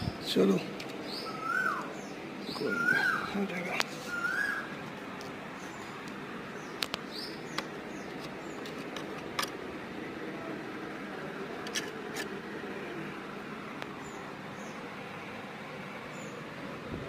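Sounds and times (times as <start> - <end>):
faint bird chirps: 1.0 - 4.8.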